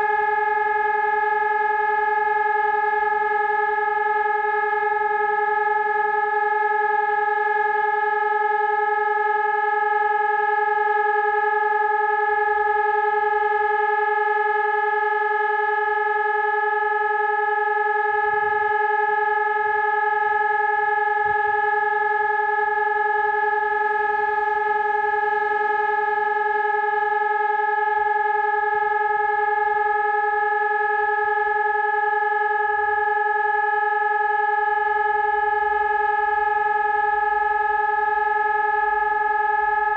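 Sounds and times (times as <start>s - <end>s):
electronic siren steady tone: 0.0s - 39.9s.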